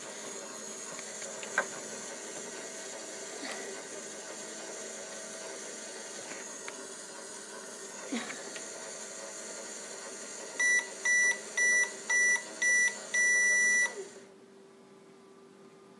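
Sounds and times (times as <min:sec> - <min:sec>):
toy microwave beeping: 0:10.6 - 0:14.1.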